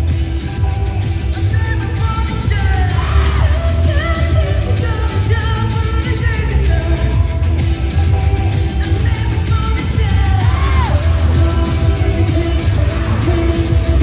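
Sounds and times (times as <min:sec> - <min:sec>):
fans yelling and singing along: 0:00.0 - 0:14.0
pop concert music with singing: 0:00.0 - 0:14.0.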